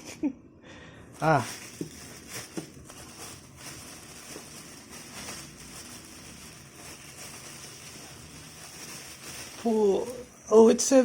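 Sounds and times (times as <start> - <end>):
background hiss: 0.0 - 11.0
cardboard box rustling: 1.2 - 9.7.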